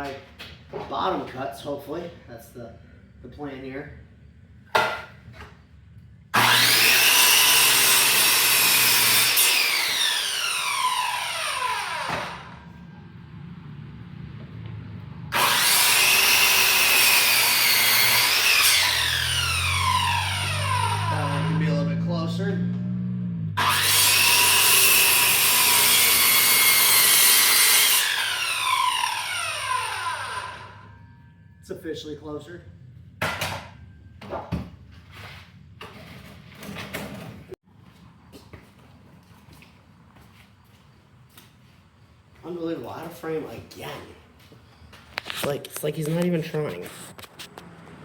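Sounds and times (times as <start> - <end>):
saw blade spinning down: 6.4 - 12.7, 15.3 - 31.2
circular saw cutting wood: 6.4 - 12.8, 15.3 - 31.2.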